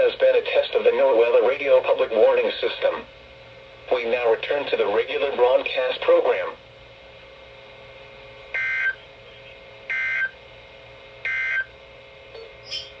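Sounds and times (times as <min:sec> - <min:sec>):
short data tone bursts: 0:12.4 - 0:13.0.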